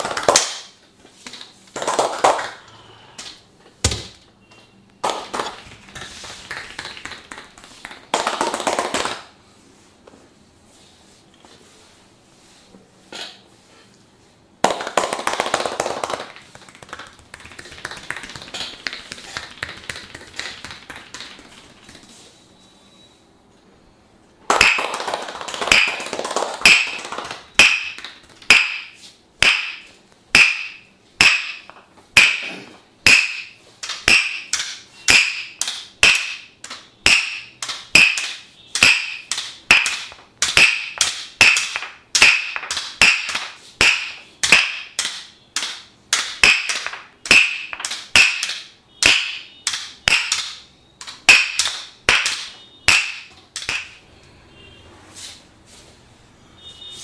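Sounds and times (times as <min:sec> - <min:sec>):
wooden mallet knocking wooden wedge: 0:27.6 - 0:36.5, 0:37.1 - 0:45.0, 0:45.6 - 0:49.5.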